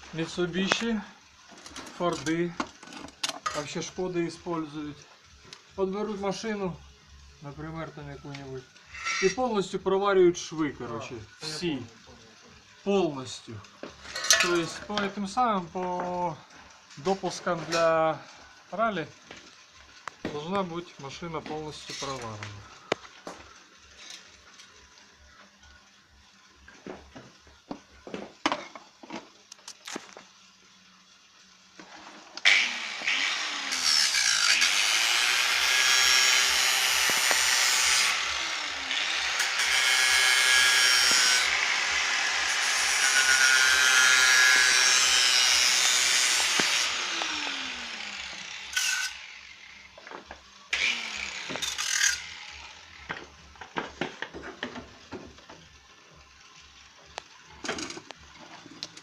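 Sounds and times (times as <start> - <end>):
power tool motor on sheet metal: 32.4 - 50.0, 50.7 - 53.5.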